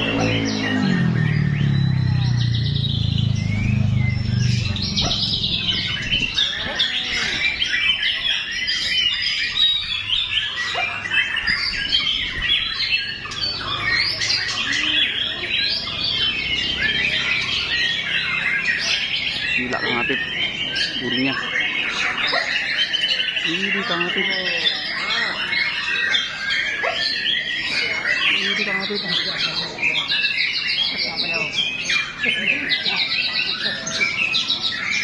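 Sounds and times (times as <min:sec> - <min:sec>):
low drone: 0:00.0 - 0:06.7
bird singing whistles and chirps: 0:00.0 - 0:35.0.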